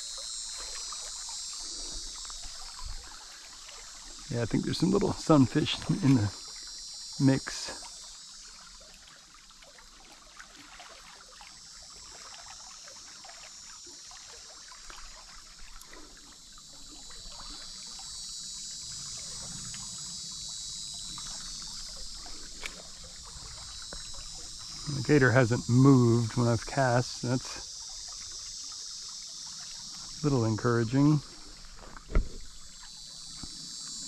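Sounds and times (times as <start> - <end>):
insect drone: 0.0 - 34.0
trickling water: 0.0 - 34.0.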